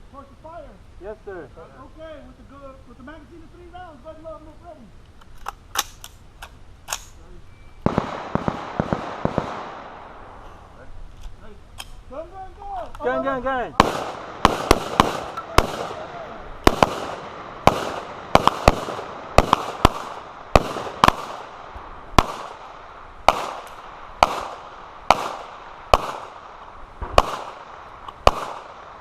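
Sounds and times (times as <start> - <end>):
gunshots: 7.8 - 10.4, 13.8 - 29.0.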